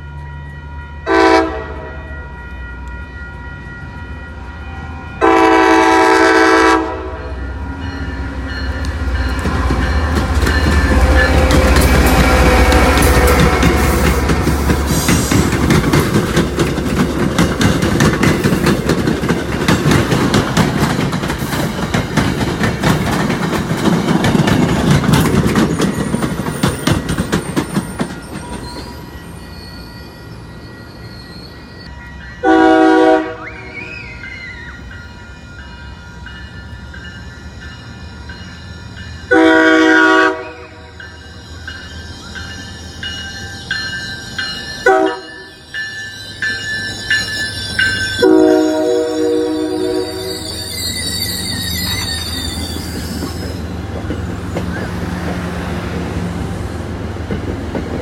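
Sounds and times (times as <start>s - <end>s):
train horn blasts: 0.9s - 2.6s, 4.8s - 7.5s, 32.4s - 34.1s, 39.3s - 41.0s, 44.8s - 45.6s, 48.2s - 50.7s
train wheels clattering: 8.7s - 29.6s, 41.7s - 55.6s, 57.2s - 58.0s.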